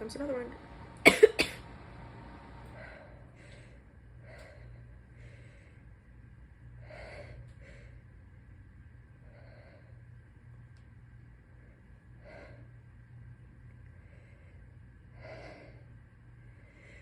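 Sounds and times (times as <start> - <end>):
stifled sneeze: 1.0 - 1.6.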